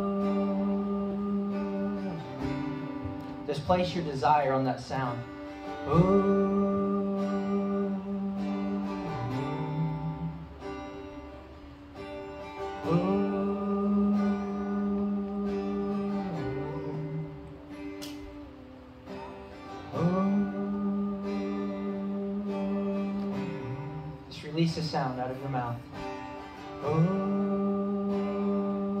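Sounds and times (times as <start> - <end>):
person singing wordlessly: 0.0 - 3.7, 5.8 - 10.6, 12.8 - 17.7, 19.9 - 25.4, 26.8 - 29.0
acoustic guitar strumming: 0.0 - 29.0.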